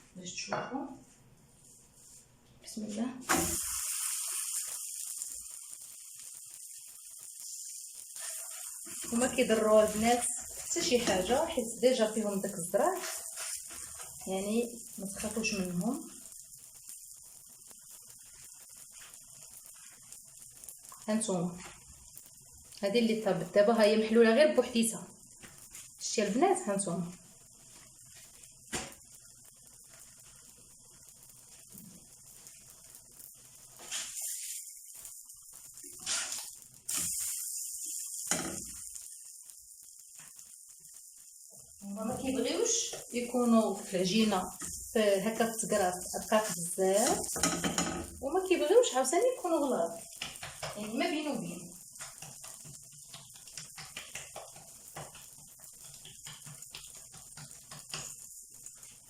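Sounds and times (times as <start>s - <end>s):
dough sizzling in a pan: 0.0s - 59.0s
hands patting dough: 52.0s - 58.2s.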